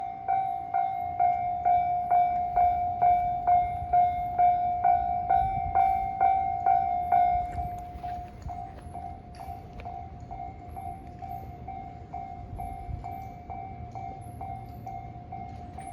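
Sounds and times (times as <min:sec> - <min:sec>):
passing train rumble: 0:00.0 - 0:15.9.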